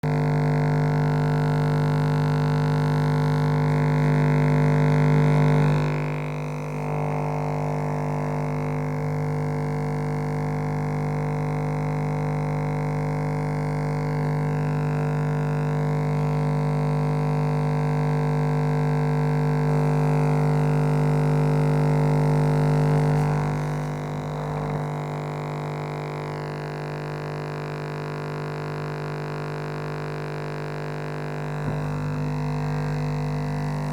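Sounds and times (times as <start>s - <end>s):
electric shaver buzzing: 20.0s - 24.9s, 31.6s - 33.9s.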